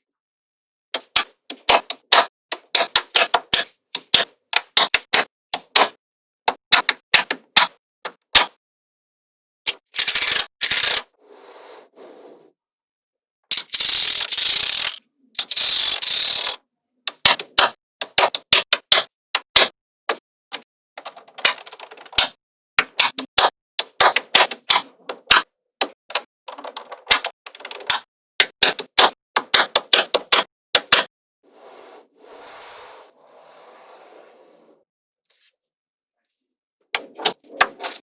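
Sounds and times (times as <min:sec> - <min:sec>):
magnetic balls clicking together: 0:01.0 - 0:08.6, 0:09.7 - 0:11.1, 0:13.5 - 0:31.1
soft longer noises: 0:11.1 - 0:12.6, 0:31.4 - 0:35.5.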